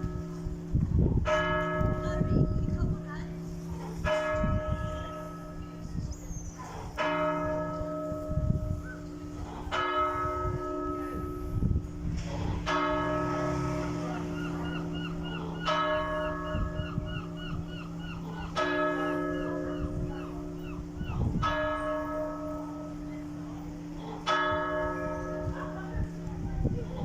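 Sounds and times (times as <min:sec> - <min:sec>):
church bell tolling: 0:00.0 - 0:27.0.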